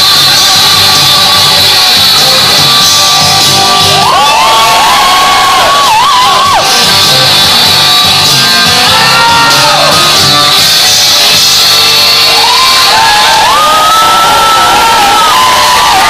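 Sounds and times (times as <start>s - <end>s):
loud music: 0.0s - 16.0s
audience whooping and shouting: 3.1s - 7.6s, 8.2s - 16.0s.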